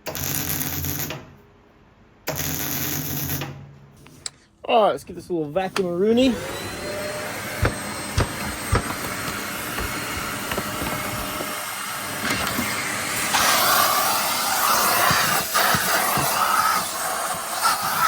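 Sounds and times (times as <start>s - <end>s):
small vacuum cleaner running: 6.2s - 18.0s
knocks: 7.6s - 11.6s.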